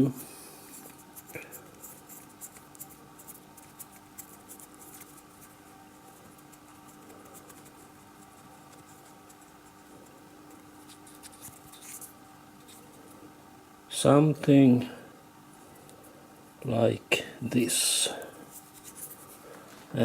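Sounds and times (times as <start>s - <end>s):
steady low hum: 0.0s - 20.0s
small parts clicking and scratching: 0.7s - 5.6s, 10.5s - 13.1s, 18.5s - 19.4s.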